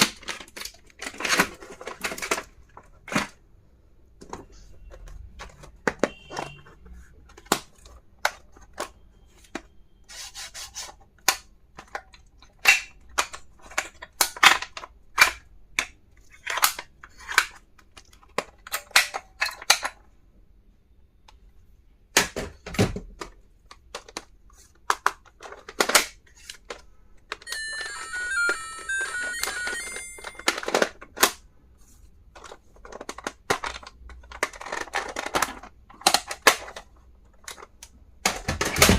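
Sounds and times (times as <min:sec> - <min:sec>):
plastic items clicking and snapping: 0:00.0 - 0:03.5, 0:04.2 - 0:09.7, 0:11.2 - 0:20.1, 0:22.1 - 0:27.6, 0:28.4 - 0:31.5, 0:32.3 - 0:38.9
electronic beeping melody: 0:27.5 - 0:30.6.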